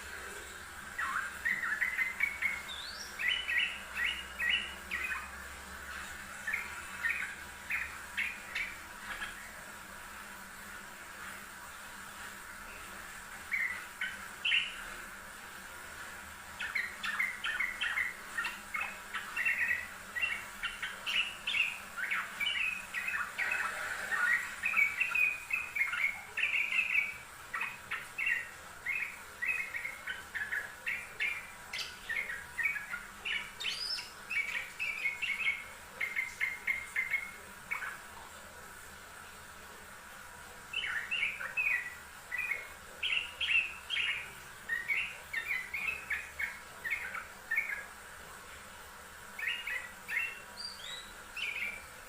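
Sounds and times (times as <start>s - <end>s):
bulbul singing: 0.9s - 5.4s, 13.5s - 14.9s, 16.6s - 38.0s, 40.7s - 48.0s, 49.4s - 52.0s.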